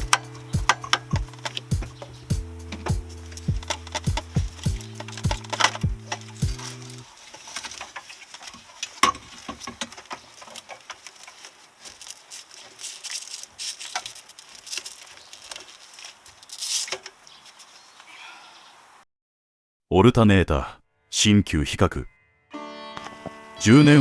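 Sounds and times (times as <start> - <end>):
tools clicking and tapping: 0.0 - 7.0
rustling and scraping: 0.0 - 18.1.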